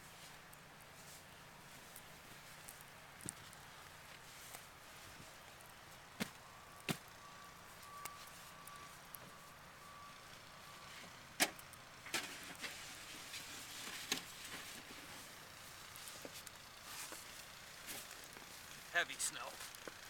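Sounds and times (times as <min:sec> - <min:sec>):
shovel scraping snow: 0:16.8 - 0:17.2.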